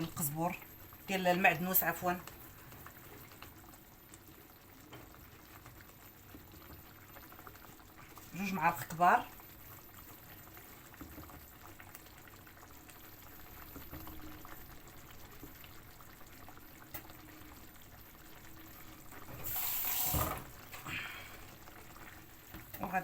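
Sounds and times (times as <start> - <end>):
food simmering in a pan: 0.0 - 23.0
running water: 17.8 - 23.0.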